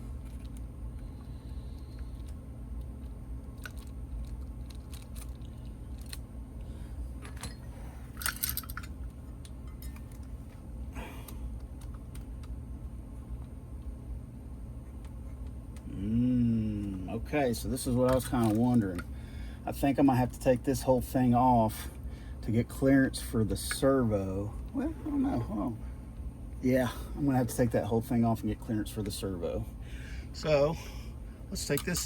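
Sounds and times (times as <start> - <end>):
low steady hum: 0.0 - 32.0
small parts clicking and rattling: 3.0 - 6.2, 7.2 - 10.3, 17.9 - 19.1.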